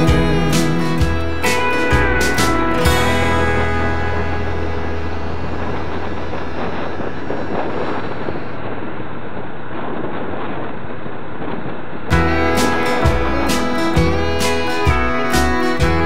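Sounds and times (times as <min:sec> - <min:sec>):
country music with guitar: 0:00.0 - 0:08.6, 0:12.1 - 0:16.0
steady rushing noise: 0:00.0 - 0:16.0.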